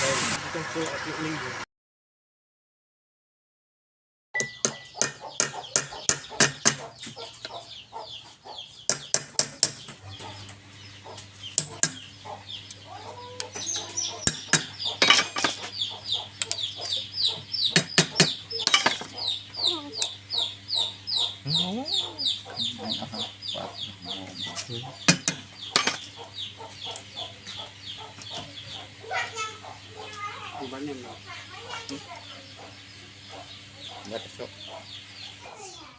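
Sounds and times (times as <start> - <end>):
sharp knocks: 4.4 - 6.9, 8.9 - 10.0, 17.7 - 19.2, 25.0 - 26.0
steady low hum: 4.8 - 35.9
chicks peeping: 4.9 - 35.9.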